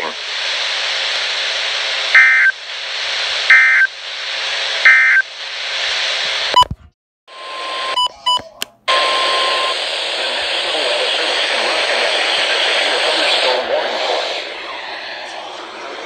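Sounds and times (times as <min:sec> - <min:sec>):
radio static hiss: 0:00.0 - 0:06.7, 0:07.3 - 0:16.0.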